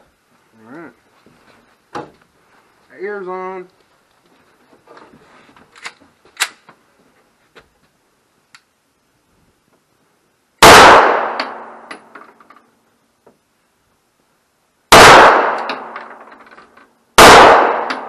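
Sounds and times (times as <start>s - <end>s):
faint clicks: 8.5s - 8.7s
pistol shot: 10.6s - 11.9s, 14.9s - 16.0s, 17.2s - 18.0s.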